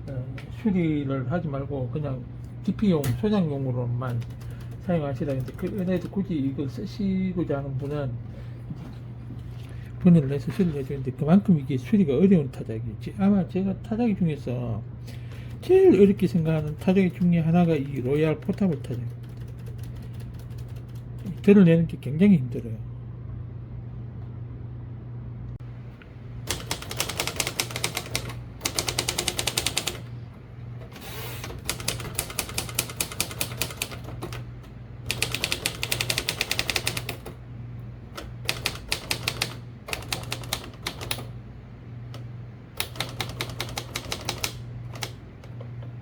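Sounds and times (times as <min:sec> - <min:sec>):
steady low hum: 0:00.0 - 0:46.0
manual typewriter keystrokes: 0:04.1 - 0:06.2, 0:15.5 - 0:21.5, 0:26.5 - 0:30.1, 0:31.4 - 0:37.4, 0:38.2 - 0:41.3, 0:42.2 - 0:45.6.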